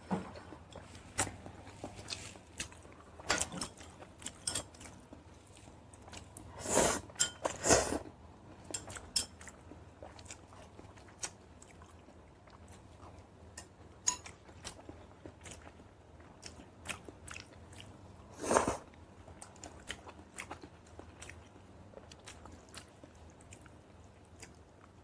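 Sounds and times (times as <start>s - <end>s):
chewing and biting food: 14.3s - 18.0s.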